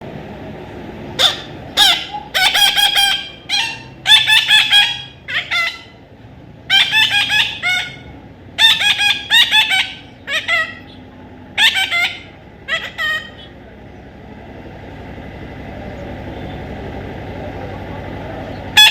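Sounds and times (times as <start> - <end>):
parrot calling shrilly: 1.2 - 6.0, 6.7 - 13.6.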